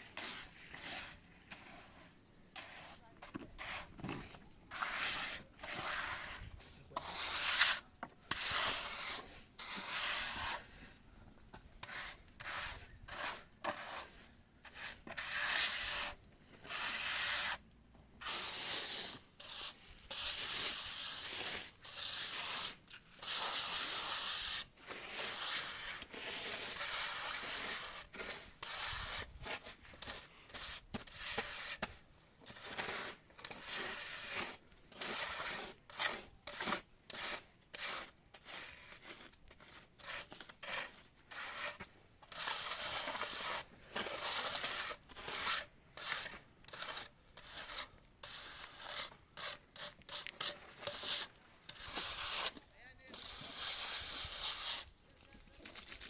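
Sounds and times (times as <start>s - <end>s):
rubbing and scraping: 0.0s - 56.0s.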